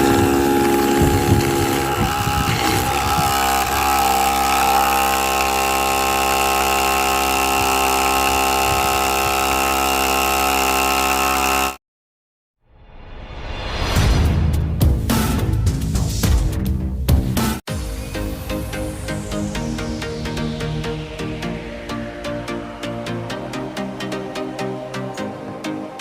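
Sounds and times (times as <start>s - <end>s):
air compressor motor running: 0.0s - 11.8s
music: 12.7s - 26.0s.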